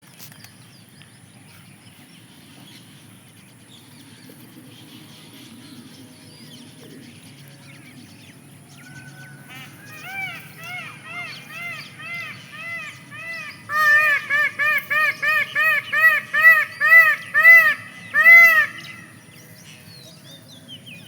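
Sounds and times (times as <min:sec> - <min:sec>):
bird harsh calls: 0:08.8 - 0:19.3.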